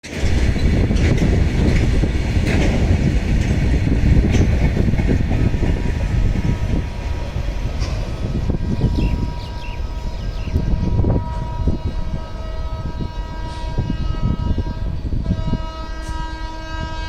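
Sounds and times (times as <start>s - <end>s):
wheels clacking on rail joints: 0.0s - 11.6s
train rumbling on track: 0.0s - 17.0s.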